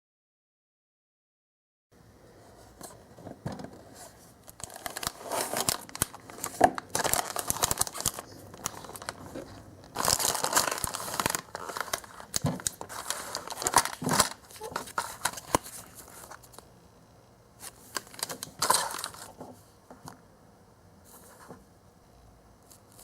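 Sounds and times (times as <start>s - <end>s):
plastic and paper crinkling and tearing: 3.9s - 16.6s, 17.6s - 19.6s.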